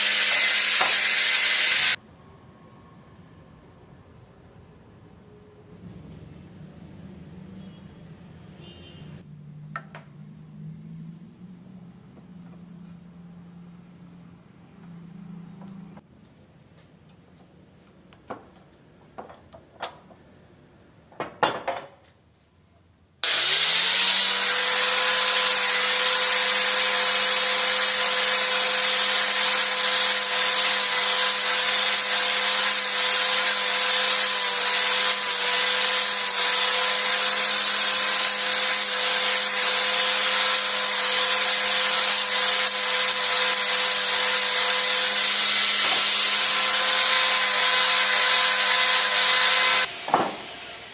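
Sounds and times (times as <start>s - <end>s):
electric power tool running: 0.0s - 2.0s, 23.2s - 50.9s.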